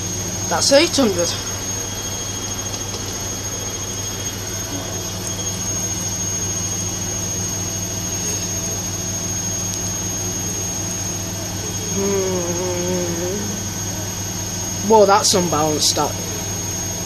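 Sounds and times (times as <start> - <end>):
high steady whine: 0.0 - 17.0
washing machine motor hum: 0.0 - 17.0.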